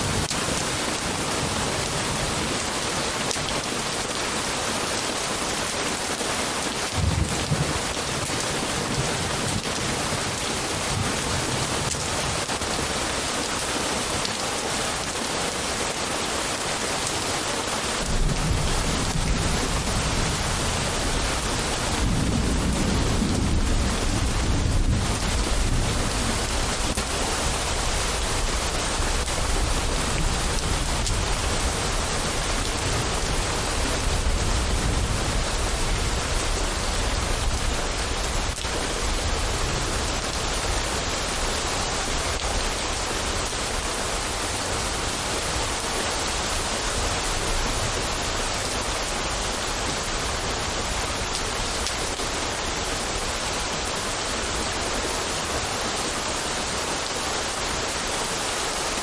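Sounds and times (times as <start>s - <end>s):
steady rain falling: 0.0s - 59.0s
rolling thunder rumble: 18.0s - 40.8s.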